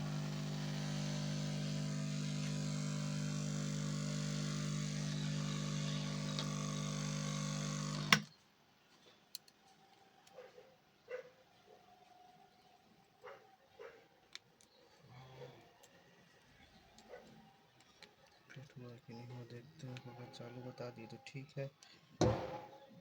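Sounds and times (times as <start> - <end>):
appliance electrical hum and hiss: 0.0 - 8.2.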